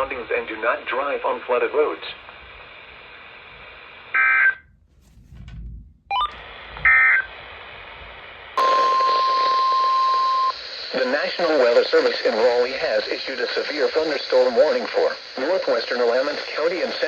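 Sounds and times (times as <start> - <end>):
radio hiss: 0.0 - 4.6, 6.1 - 17.0
steady warning alarm tone: 8.6 - 10.6.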